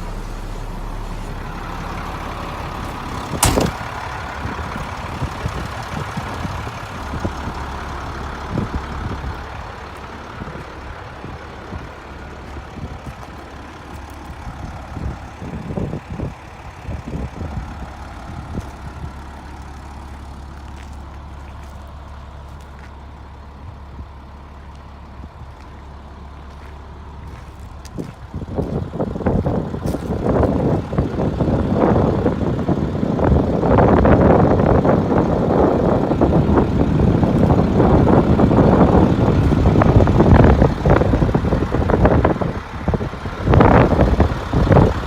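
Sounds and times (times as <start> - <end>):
diesel engine idling: 0.0 - 45.0
knocks and clunks: 1.0 - 4.3.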